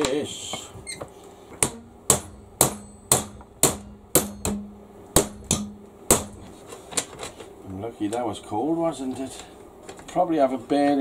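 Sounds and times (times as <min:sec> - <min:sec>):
hammer striking metal bar: 0:01.6 - 0:06.4.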